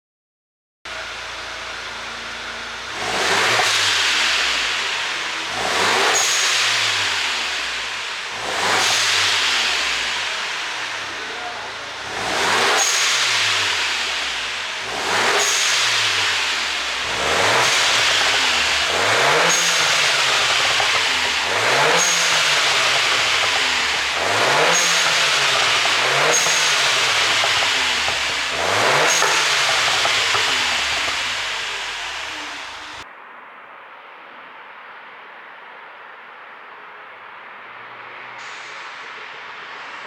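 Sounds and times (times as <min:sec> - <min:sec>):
car engine revving: 0:00.9 - 0:33.0.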